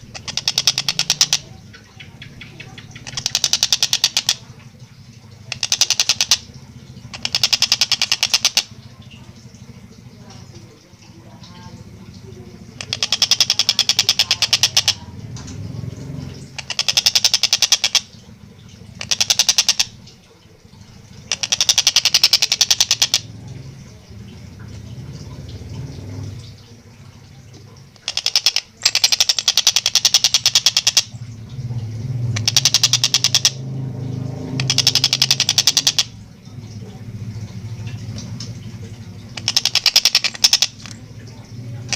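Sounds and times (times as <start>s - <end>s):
kingfisher calling: 0.0s - 4.5s, 11.4s - 15.1s, 34.6s - 36.2s, 38.8s - 41.9s.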